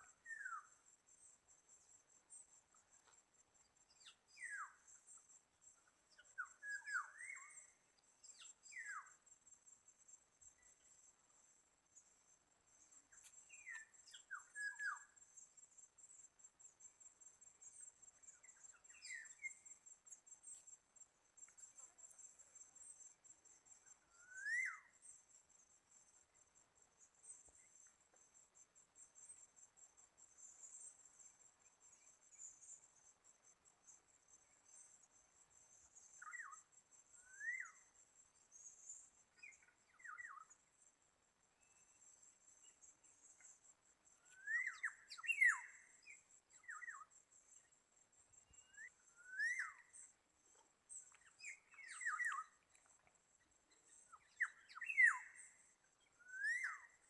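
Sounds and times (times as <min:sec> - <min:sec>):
bird whistled calls: 0:24.2 - 0:24.9, 0:44.3 - 0:45.8, 0:54.1 - 0:55.5.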